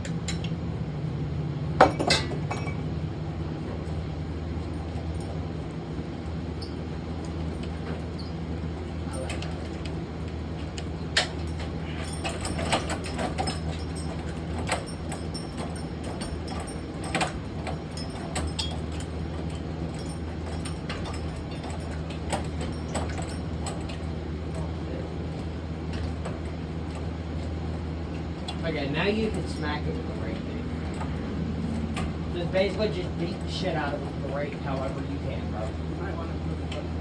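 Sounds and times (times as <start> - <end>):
steady low hum: 0.0 - 37.0
metallic clinks and rattles: 11.2 - 24.7, 29.2 - 35.8.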